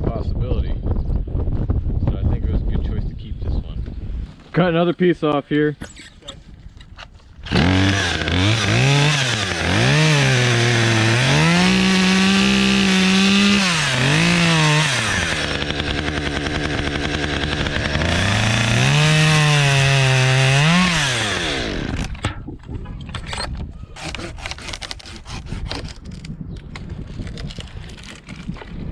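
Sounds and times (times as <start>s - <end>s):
chainsaw cutting wood: 7.4s - 22.2s, 24.0s - 26.1s.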